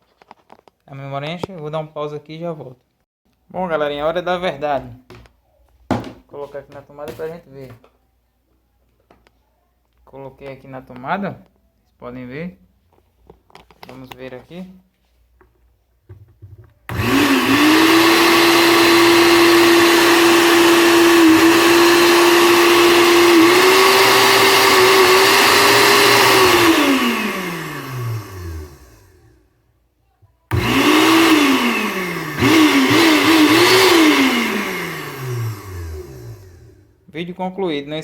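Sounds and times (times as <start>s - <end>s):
blender motor whining: 16.9s - 29.4s, 30.5s - 36.9s.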